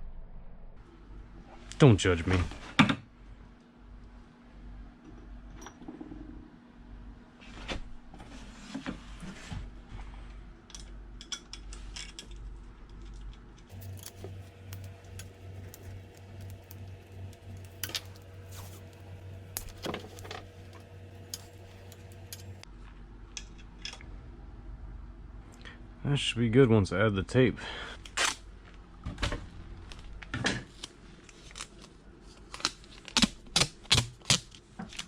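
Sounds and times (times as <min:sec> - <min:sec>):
small metal pieces clinking: 0:13.7 - 0:22.6
steady low hum: 0:13.7 - 0:30.3.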